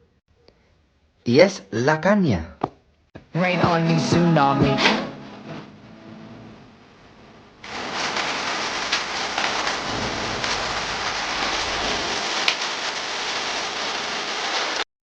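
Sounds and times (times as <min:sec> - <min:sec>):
heavy rain pouring: 0:07.6 - 0:14.8.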